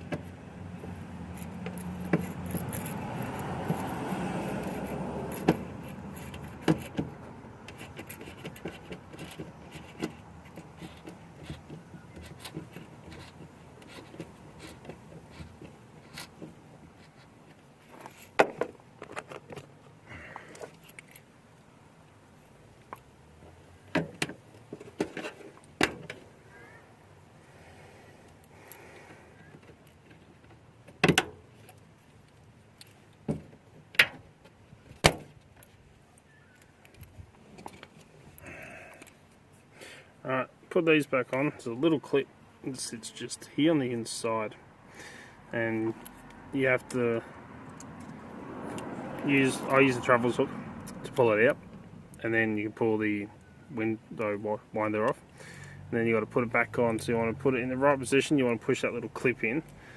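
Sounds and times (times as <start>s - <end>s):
small parts clicking and rattling: 1.3s - 4.0s, 20.4s - 21.3s, 36.5s - 39.2s.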